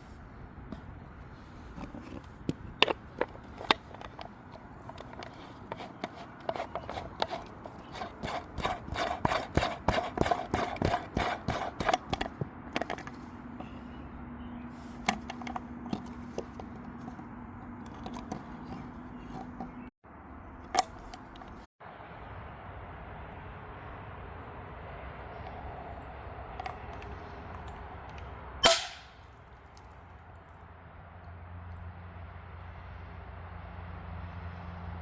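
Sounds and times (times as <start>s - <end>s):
muffled gunshots: 28.6s - 29.1s.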